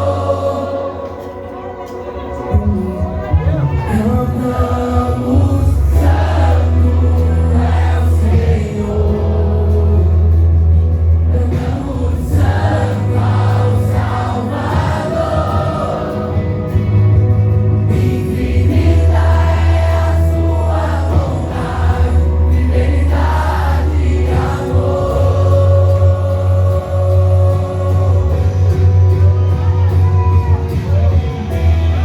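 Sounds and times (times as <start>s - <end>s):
band with strong bass: 0.0s - 32.0s
choir singing worship music: 0.0s - 32.0s.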